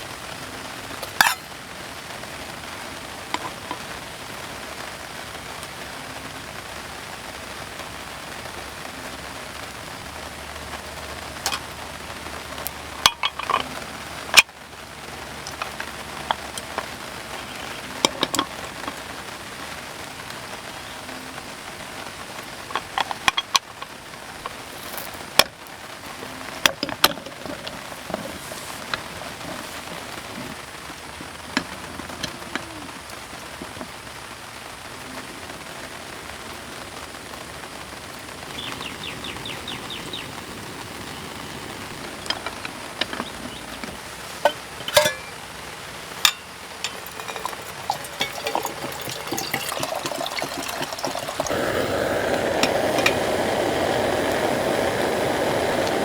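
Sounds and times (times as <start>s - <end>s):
steady rain falling: 0.0s - 56.0s
camp gear clicking and knocking: 18.0s - 19.0s, 42.2s - 45.5s, 46.2s - 53.2s.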